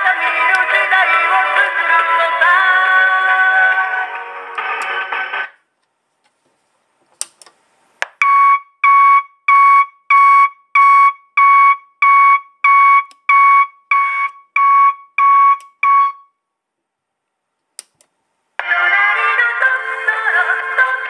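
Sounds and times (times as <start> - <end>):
reversing alarm beeps: 8.2 - 16.3
click: 17.7 - 18.1.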